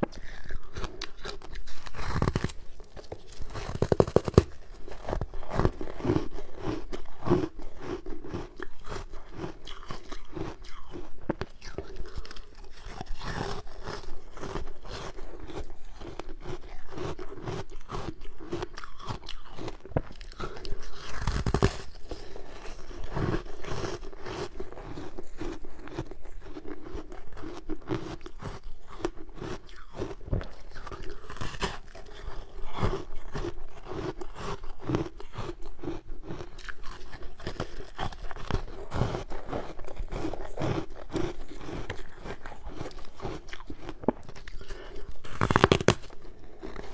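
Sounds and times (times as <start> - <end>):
person crunching ice: 0.0 - 46.9.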